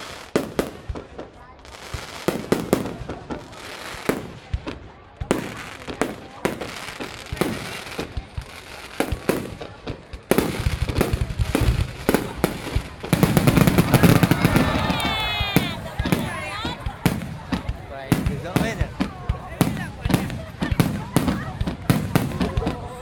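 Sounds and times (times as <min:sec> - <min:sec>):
fireworks bangs and crackling: 0:00.0 - 0:23.0.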